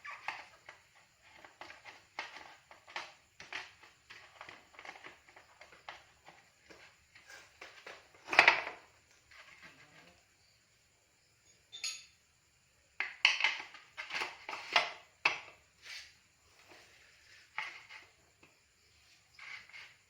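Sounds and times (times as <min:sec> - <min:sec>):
metal tools clinking: 0:11.7 - 0:12.2.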